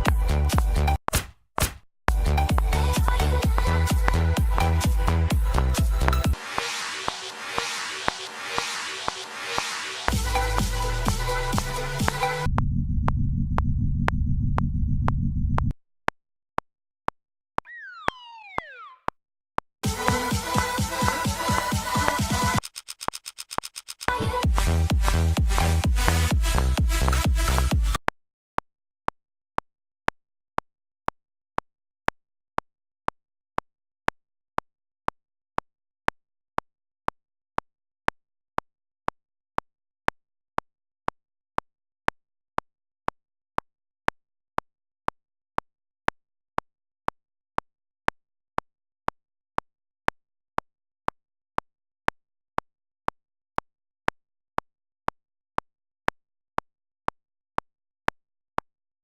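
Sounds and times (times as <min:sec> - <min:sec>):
sharp ticking clicks: 0:22.6 - 0:24.2.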